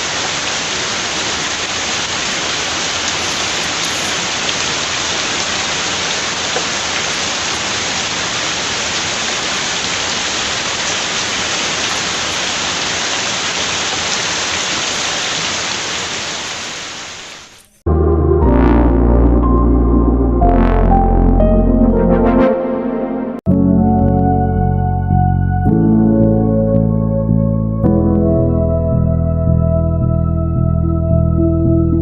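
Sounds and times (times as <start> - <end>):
heavy rain falling: 0.0 - 17.6.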